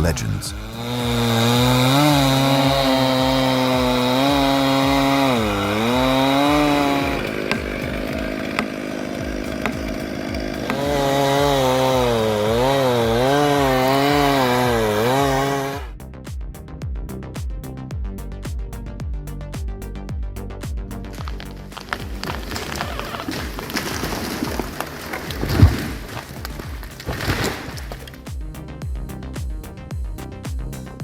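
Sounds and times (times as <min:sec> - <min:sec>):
chainsaw cutting wood: 0:00.0 - 0:15.9, 0:21.1 - 0:28.7.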